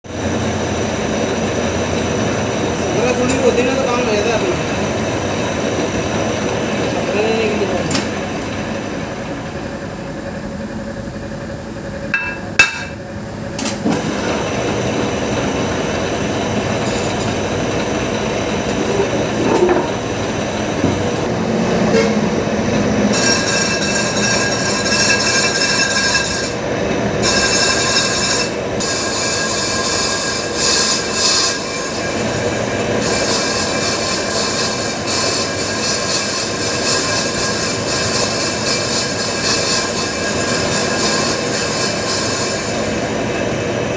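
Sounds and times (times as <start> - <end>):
lathe tool scraping metal: 21.2 - 43.9
high-pitched squeal: 21.4 - 43.1.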